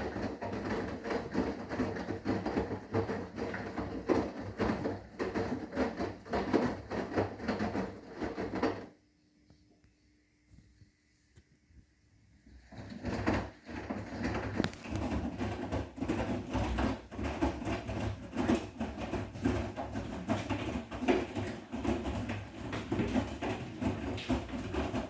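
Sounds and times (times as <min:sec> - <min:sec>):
washing machine drum tumbling: 0:12.7 - 0:25.0.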